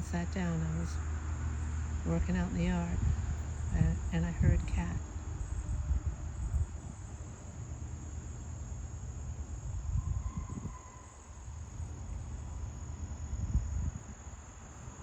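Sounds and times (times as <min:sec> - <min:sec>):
low microphone rumble: 0:00.0 - 0:07.1
insects chirping: 0:00.0 - 0:15.0.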